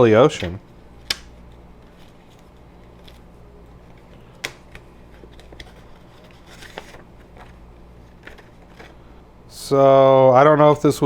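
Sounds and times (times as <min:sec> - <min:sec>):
low steady hum: 0:00.0 - 0:11.0
cd case clicks: 0:00.3 - 0:01.4, 0:03.9 - 0:05.9
packaging rustle: 0:01.4 - 0:09.1.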